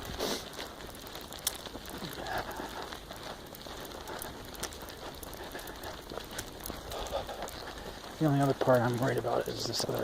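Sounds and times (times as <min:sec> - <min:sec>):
footsteps crunching in snow: 0:00.0 - 0:10.0.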